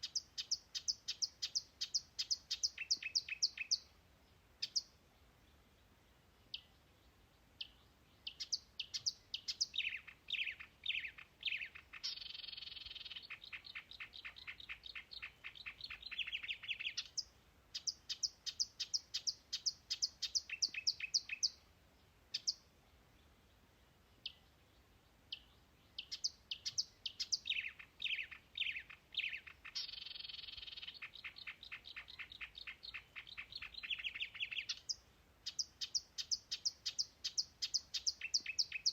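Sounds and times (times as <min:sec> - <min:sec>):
songbird chirping and trilling: 0:00.0 - 0:38.9.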